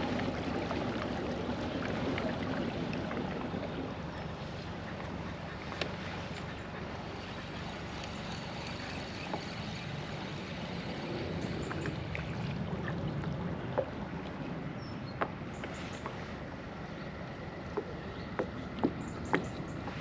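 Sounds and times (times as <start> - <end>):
water flowing: 0.0 - 14.8
wind: 0.0 - 20.0.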